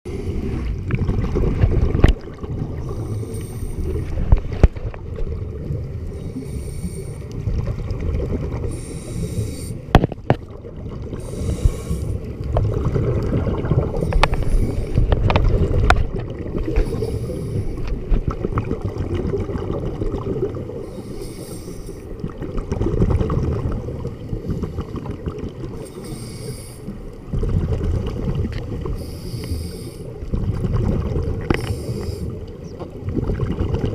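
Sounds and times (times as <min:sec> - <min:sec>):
exhaled bubbles hissing: 0:00.1 - 0:33.9
low underwater rumble: 0:00.1 - 0:33.9
diver breathing through regulator: 0:02.8 - 0:04.3, 0:06.1 - 0:07.4, 0:08.6 - 0:09.9, 0:11.2 - 0:12.3, 0:13.9 - 0:15.2, 0:16.7 - 0:18.0, 0:20.8 - 0:22.1, 0:25.8 - 0:27.0, 0:29.0 - 0:30.2, 0:31.5 - 0:32.5.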